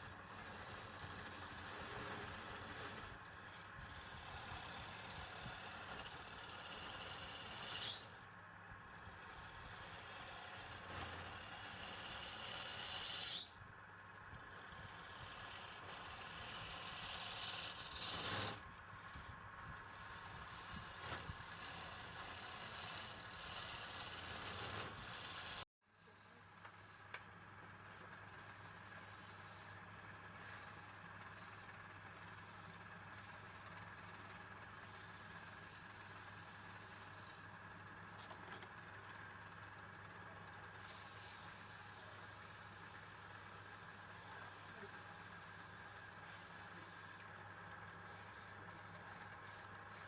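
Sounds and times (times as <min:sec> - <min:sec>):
tool scraping across wood: 0:14.8 - 0:25.6.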